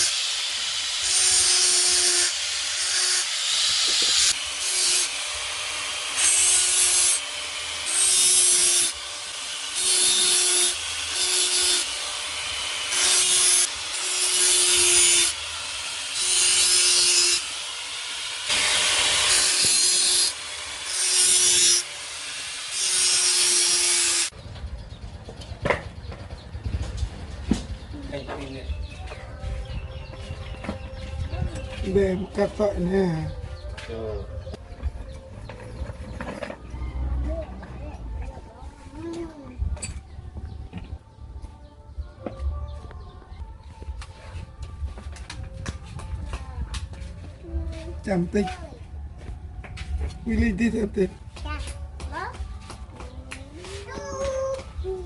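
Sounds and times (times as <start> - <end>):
hand saw cutting wood: 0.0 - 24.3.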